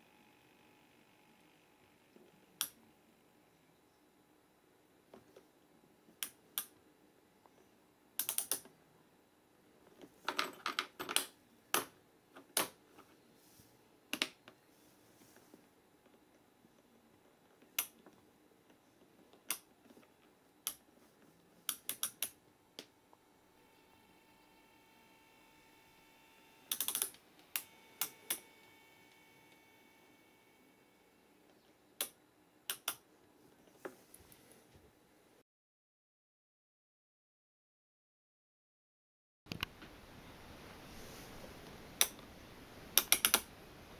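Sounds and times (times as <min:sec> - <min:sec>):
mechanical switch clicks: 0:32.0 - 0:33.0, 0:43.0 - 0:43.5.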